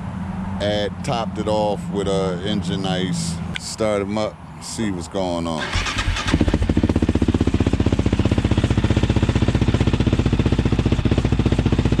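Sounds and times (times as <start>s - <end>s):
engine idling with pulsing beat: 6.6s - 12.0s.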